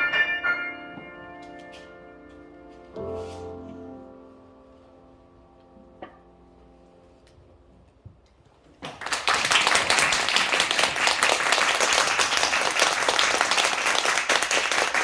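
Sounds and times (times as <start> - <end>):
audience applause: 8.8 - 15.0.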